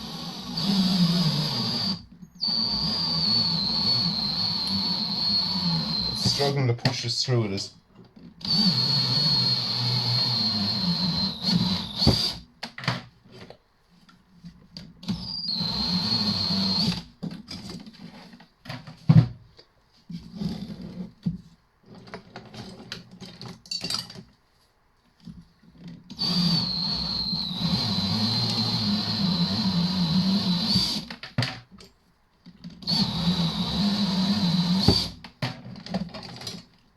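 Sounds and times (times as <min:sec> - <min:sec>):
cordless drill whining: 0:00.0 - 0:06.6, 0:08.4 - 0:12.5, 0:15.0 - 0:17.1, 0:26.1 - 0:31.1, 0:32.8 - 0:35.2.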